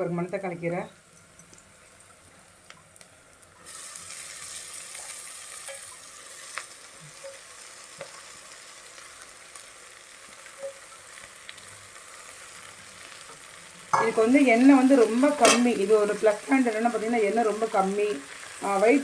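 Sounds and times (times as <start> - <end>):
greens sizzling in a pan: 0.0 - 19.0.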